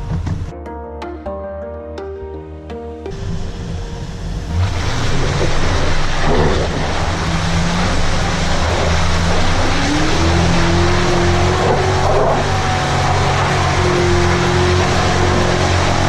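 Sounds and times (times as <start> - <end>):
loud steady rushing noise: 3.1 - 16.0
engine running under load: 3.2 - 16.0.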